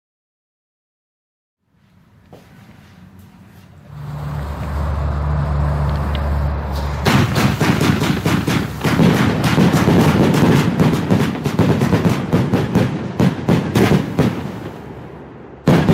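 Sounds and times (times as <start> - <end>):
firework battery rapid bangs: 6.3 - 15.9.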